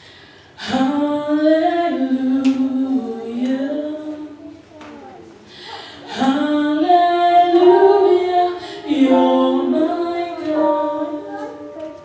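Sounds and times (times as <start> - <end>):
gospel choir singing: 6.1 - 12.0.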